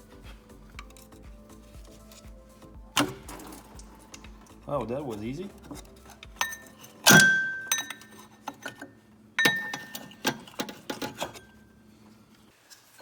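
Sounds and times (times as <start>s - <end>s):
metal tools clinking and clanking: 3.0s - 11.6s.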